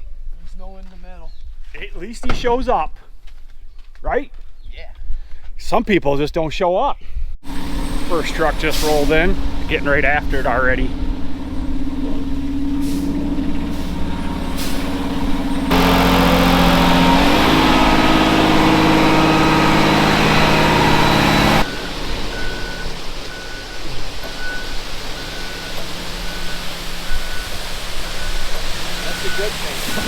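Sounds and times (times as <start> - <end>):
diesel truck engine revving: 7.4 - 30.0
reversing alarm beeping: 13.2 - 30.0.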